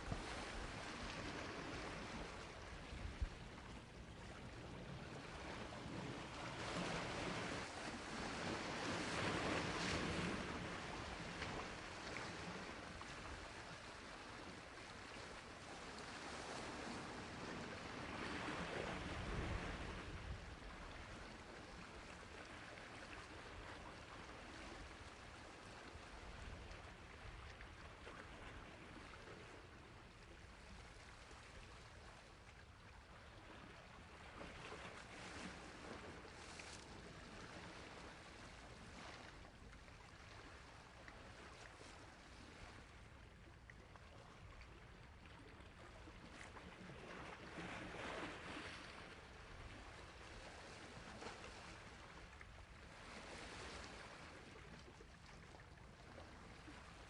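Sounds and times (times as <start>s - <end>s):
sea waves washing on shore: 0.0s - 32.2s.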